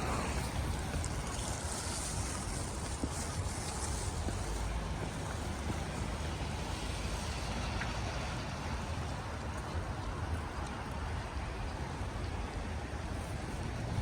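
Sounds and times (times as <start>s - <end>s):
wind on microphone: 0.0s - 6.2s
traffic noise: 0.0s - 14.0s.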